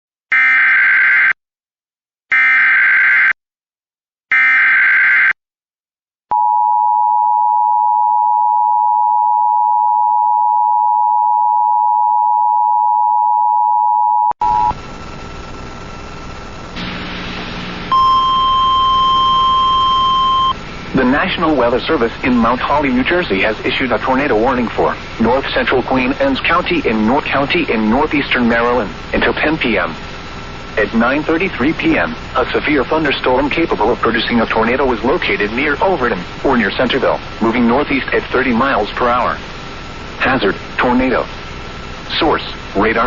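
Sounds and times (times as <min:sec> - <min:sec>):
single steady tone: 0:06.3 - 0:14.8, 0:17.9 - 0:20.6
two-tone attention signal: 0:06.3 - 0:14.8, 0:17.9 - 0:21.2
static: 0:14.4 - 0:43.0.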